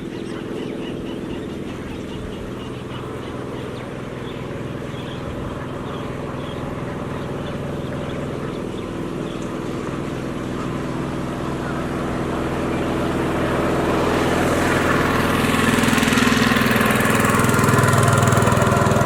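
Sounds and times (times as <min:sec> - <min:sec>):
high bird calls: 0:00.0 - 0:11.9
engine running steadily: 0:00.0 - 0:19.0.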